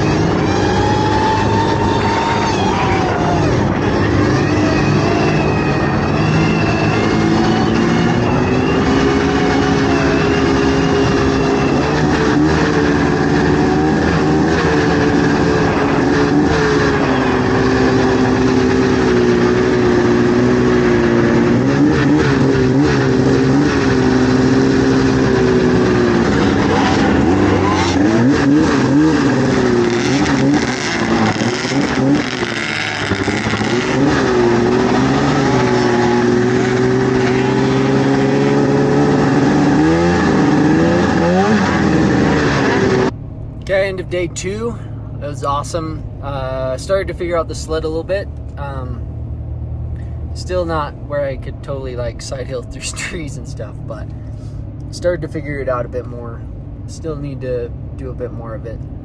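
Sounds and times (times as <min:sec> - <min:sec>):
snowmobile engine running: 0:00.0 - 0:43.1.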